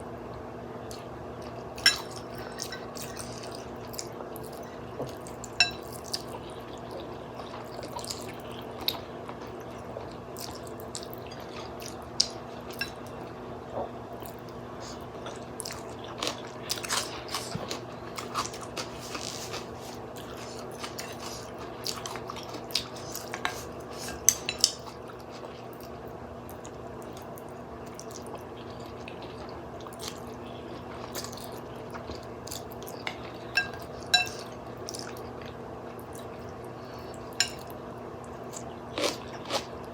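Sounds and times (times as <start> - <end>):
steady low hum: 0.0 - 39.9
slurping and chewing: 0.9 - 39.9
utensils clinking against bowl: 1.8 - 3.2, 33.0 - 34.5.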